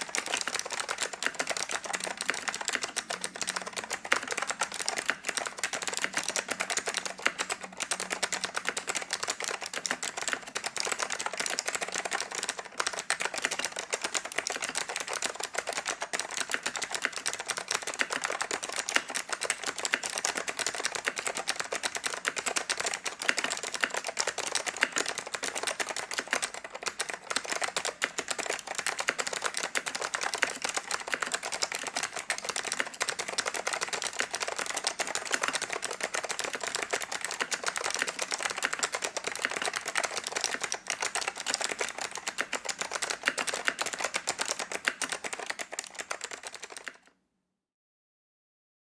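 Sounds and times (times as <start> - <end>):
fast typing on mechanical keyboard: 0.0 - 47.1.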